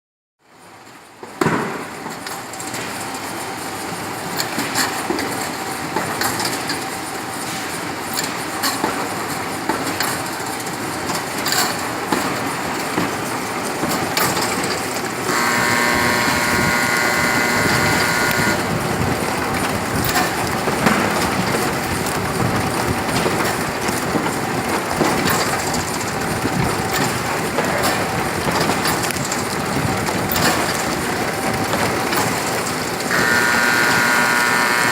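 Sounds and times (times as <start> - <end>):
machine mechanical clatter: 1.4 - 34.9
high whine: 15.2 - 22.7, 33.0 - 34.9.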